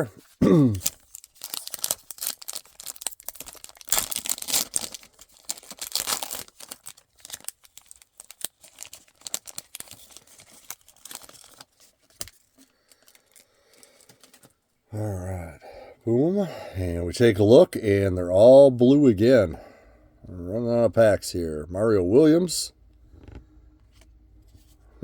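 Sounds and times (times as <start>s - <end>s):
wrapper tearing and crinkling: 0.8s - 14.4s.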